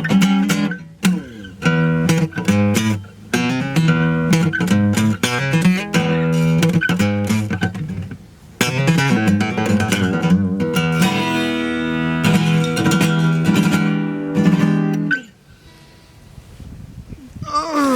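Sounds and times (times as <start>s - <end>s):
acoustic guitar strumming chords: 0.0s - 16.1s.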